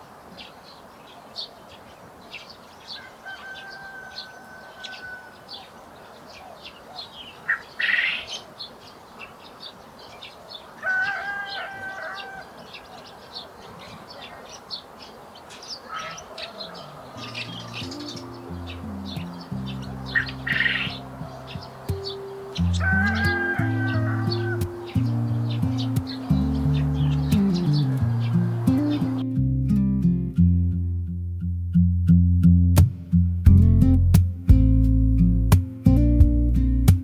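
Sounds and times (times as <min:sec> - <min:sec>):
drawn-out bird call: 0:00.0 - 0:29.2
birds chirping: 0:00.0 - 0:29.3
loud harsh bird call: 0:02.3 - 0:29.2.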